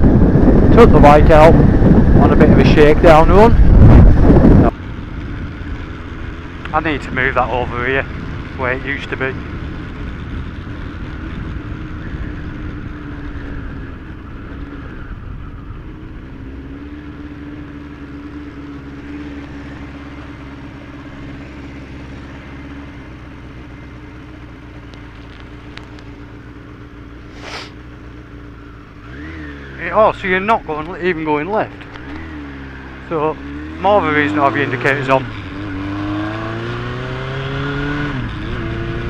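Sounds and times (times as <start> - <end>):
wind rushing around helmet: 0.0 - 26.3
motorcycle engine cruising: 0.0 - 39.0.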